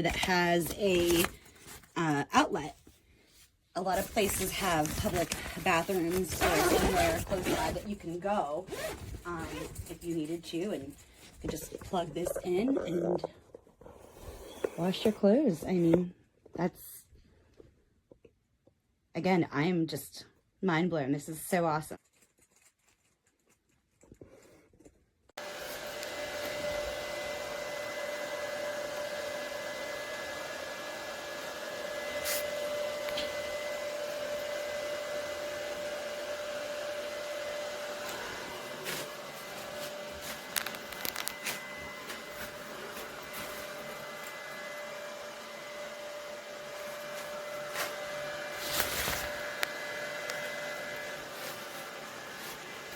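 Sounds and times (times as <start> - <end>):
heater fan whirring: 25.4 - 52.9.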